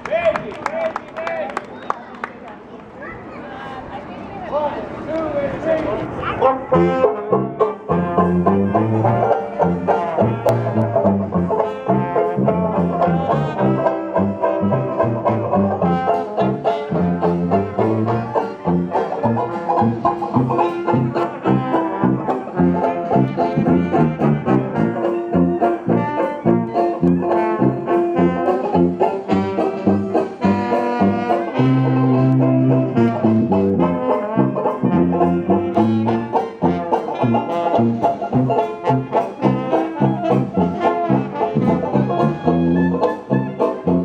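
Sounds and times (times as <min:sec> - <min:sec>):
jazzy band with banjo and brass: 0:06.4 - 0:44.0.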